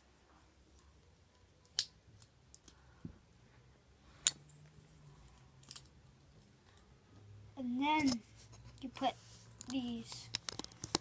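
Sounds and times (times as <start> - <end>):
plastic bricks clicking together: 9.6 - 11.0.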